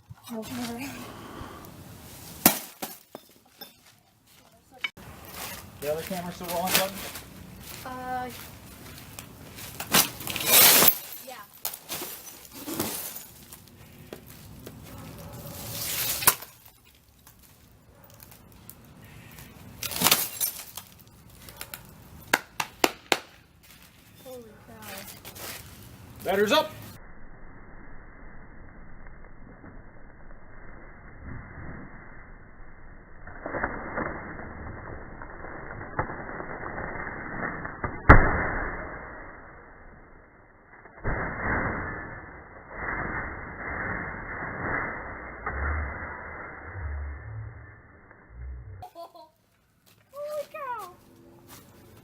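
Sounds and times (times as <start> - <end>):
sledgehammer smashing glass screen: 2.4 - 3.8, 9.8 - 13.6, 15.6 - 17.0, 19.8 - 21.0
glass cracking and crunching: 9.7 - 13.8, 15.6 - 19.0, 19.8 - 21.9.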